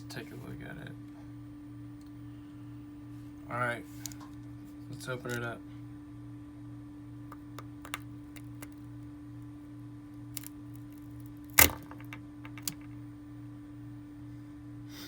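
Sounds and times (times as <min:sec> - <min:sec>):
sharp crack of snack shell: 0:07.3 - 0:08.8, 0:10.4 - 0:12.9.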